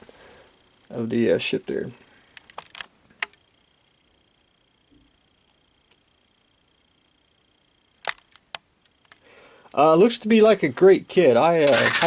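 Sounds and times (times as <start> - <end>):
plastic parts clicking: 11.7 - 12.0.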